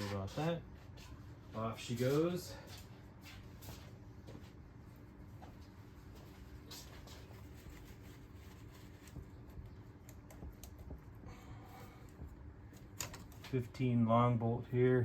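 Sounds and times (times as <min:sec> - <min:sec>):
steady low hum: 0:00.0 - 0:15.0
tools and parts clicking: 0:12.8 - 0:13.5.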